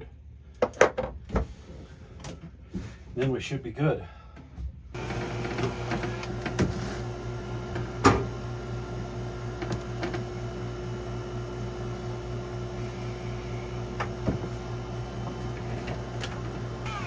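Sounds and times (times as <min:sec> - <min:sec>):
low mechanical hum: 0:04.3 - 0:17.0.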